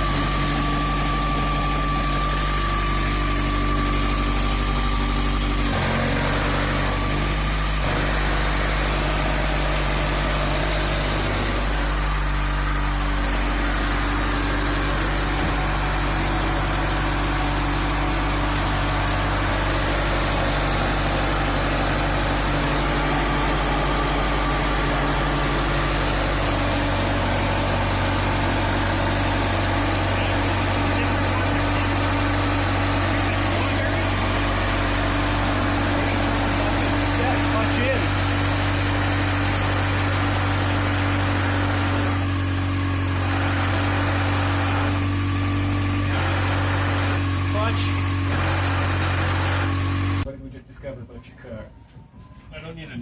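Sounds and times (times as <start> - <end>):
turbocharged engine idling: 0.0 - 50.3.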